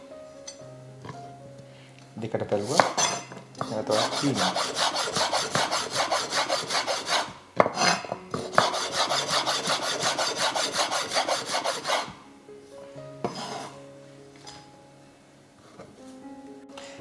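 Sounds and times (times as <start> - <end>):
soft background music: 0.0 - 17.0
knife chopping on cutting board: 3.6 - 12.1.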